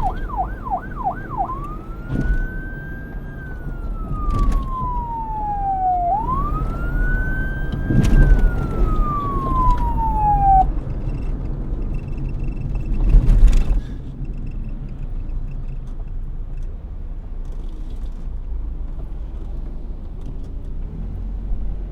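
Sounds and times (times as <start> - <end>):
police siren winding down: 0.0 - 10.8
low vehicle rumble: 0.0 - 21.9.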